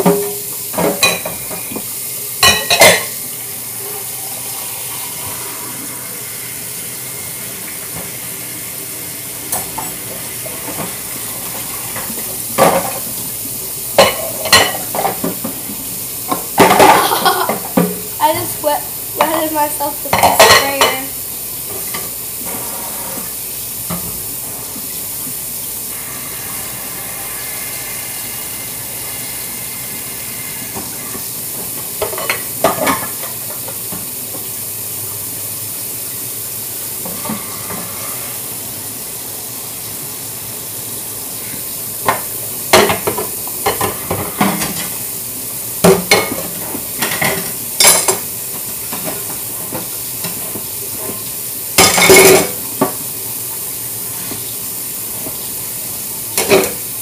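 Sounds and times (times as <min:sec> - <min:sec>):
dishes clinking: 0:00.0 - 0:03.2, 0:14.0 - 0:15.6, 0:20.1 - 0:21.1, 0:45.9 - 0:48.3, 0:51.8 - 0:53.0, 0:56.4 - 0:56.8
sink sprayer water hissing: 0:00.0 - 0:57.0.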